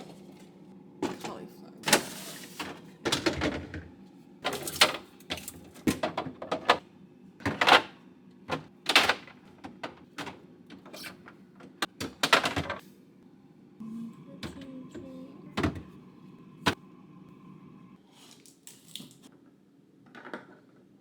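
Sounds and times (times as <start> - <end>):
containers clattering in fridge: 0.0 - 6.8, 7.4 - 12.8, 15.5 - 15.9.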